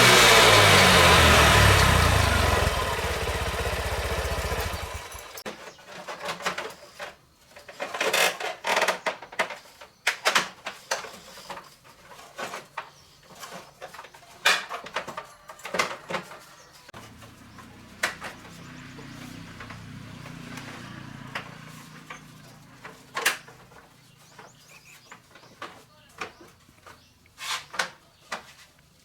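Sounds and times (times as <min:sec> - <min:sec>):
motorbike engine running: 0:00.0 - 0:05.4, 0:17.0 - 0:23.1.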